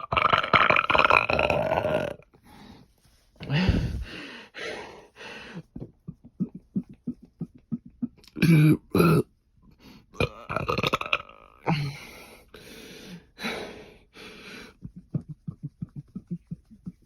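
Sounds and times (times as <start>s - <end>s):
man burping: 0.0s - 2.3s, 7.7s - 9.3s, 10.2s - 11.9s.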